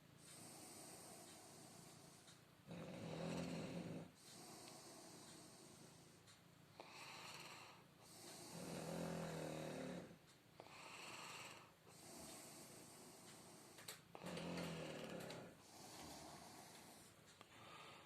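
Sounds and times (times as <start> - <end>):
soft hissing breath: 0.0 - 18.0
dog snoring: 2.6 - 6.0, 6.8 - 13.3, 14.1 - 18.0.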